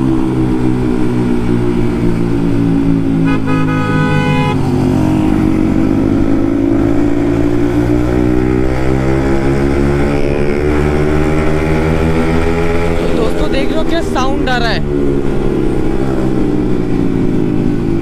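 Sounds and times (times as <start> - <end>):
motorcycle accelerating: 0.0 - 18.0
vehicle horn: 3.2 - 4.8.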